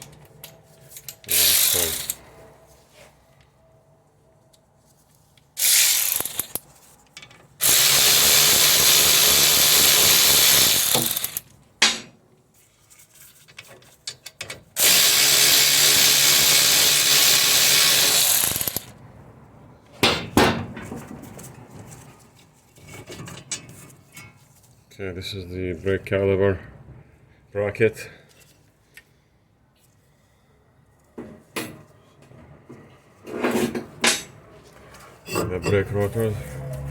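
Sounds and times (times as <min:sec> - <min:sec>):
power tool running: 0:01.3 - 0:02.2, 0:05.6 - 0:06.6, 0:07.6 - 0:11.4, 0:14.8 - 0:18.9
sharp metallic clicks: 0:05.6 - 0:06.6.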